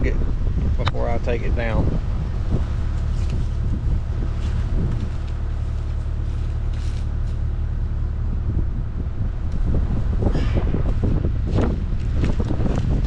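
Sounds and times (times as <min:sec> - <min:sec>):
wind buffeting microphone: 0:00.0 - 0:13.0
faint rustles: 0:02.5 - 0:07.9.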